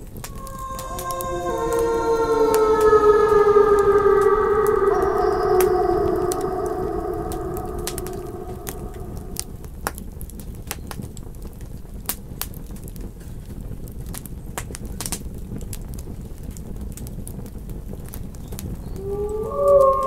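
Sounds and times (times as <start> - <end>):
wolf howl: 0.0 - 9.8, 18.9 - 20.0.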